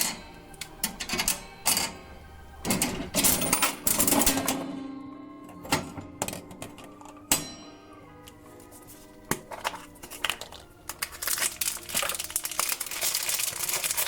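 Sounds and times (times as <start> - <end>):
coin mechanism clicking and clattering: 2.7 - 4.8
coins clinking: 2.7 - 4.8, 9.5 - 14.0.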